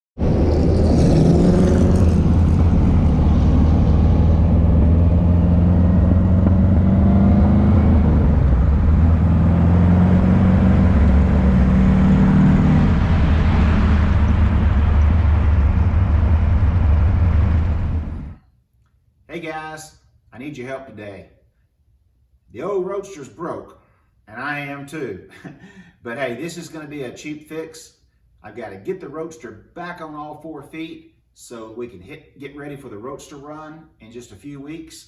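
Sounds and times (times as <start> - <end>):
car engine revving loudly: 0.2 - 18.4.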